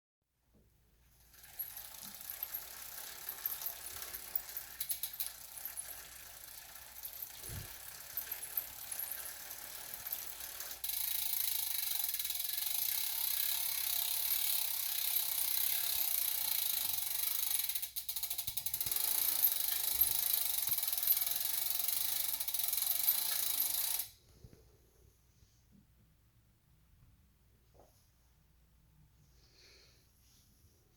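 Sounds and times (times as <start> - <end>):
bike drivetrain running: 1.3 - 24.0.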